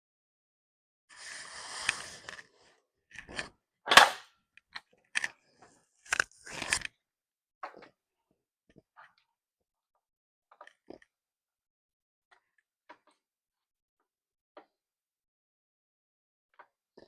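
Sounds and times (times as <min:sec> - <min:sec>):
objects clicking and knocking: 0:03.1 - 0:06.9
brief rustle: 0:06.0 - 0:06.9.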